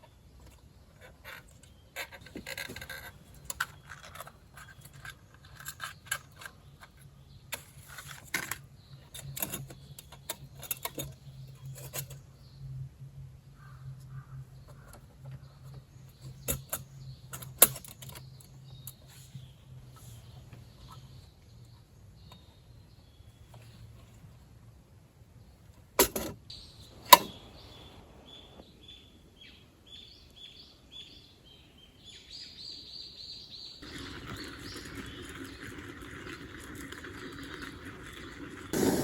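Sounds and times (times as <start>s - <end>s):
camping lantern clicks and metal clinks: 16.2s - 19.0s.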